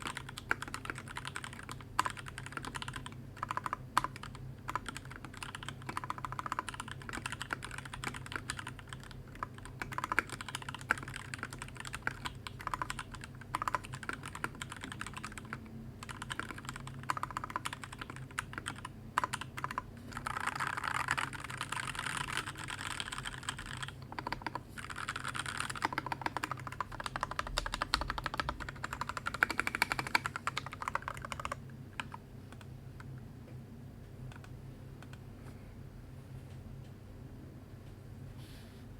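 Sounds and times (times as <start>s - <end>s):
mechanical keyboard typing: 0.0s - 32.7s, 34.3s - 35.2s.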